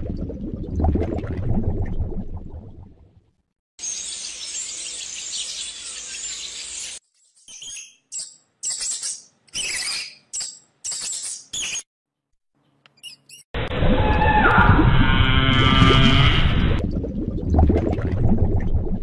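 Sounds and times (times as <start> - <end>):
small birds chirping: 3.8 - 11.9, 12.6 - 13.5.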